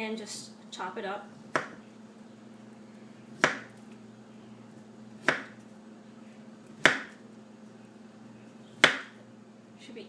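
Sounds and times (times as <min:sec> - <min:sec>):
knife chopping beet: 0:01.5 - 0:01.8, 0:03.3 - 0:03.8, 0:05.2 - 0:05.6, 0:06.8 - 0:07.2, 0:08.8 - 0:09.2.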